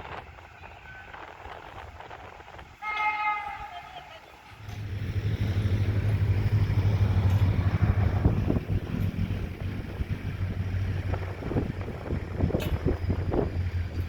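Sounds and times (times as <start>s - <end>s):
wind on microphone: 0.0s - 3.7s, 4.6s - 14.0s
diesel locomotive engine rumble: 0.0s - 14.0s
train wheels knocking: 4.5s - 14.0s.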